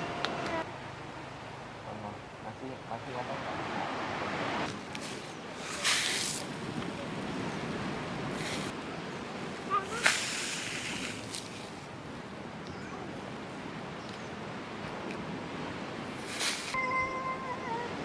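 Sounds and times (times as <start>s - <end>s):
sea surf on a beach: 0.0s - 18.0s
short hissing bursts: 5.6s - 6.5s, 8.4s - 8.7s, 9.9s - 11.8s, 16.2s - 16.8s.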